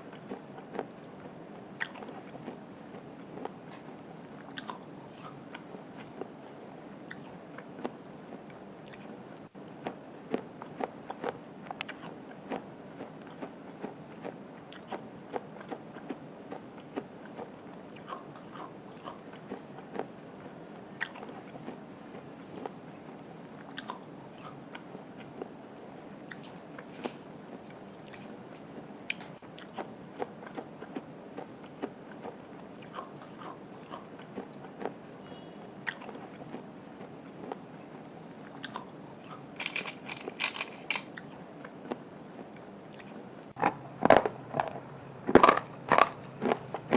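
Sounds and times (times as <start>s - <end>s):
steady chewing: 0.0s - 46.9s
brittle clay crunching: 43.6s - 46.9s.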